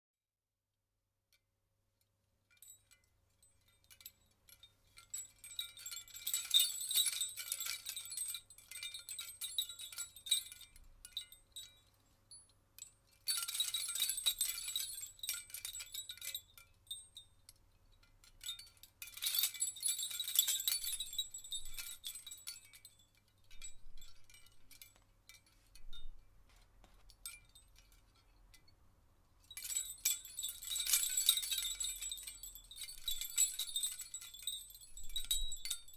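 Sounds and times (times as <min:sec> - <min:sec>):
copper bells jingling: 0:05.0 - 0:12.5, 0:13.3 - 0:17.2, 0:18.4 - 0:26.1, 0:29.5 - 0:35.9.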